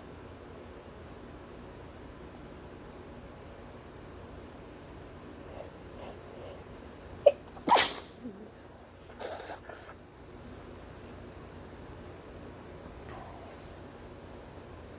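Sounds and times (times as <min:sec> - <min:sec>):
person sneezing: 0:05.5 - 0:06.6, 0:07.2 - 0:09.9.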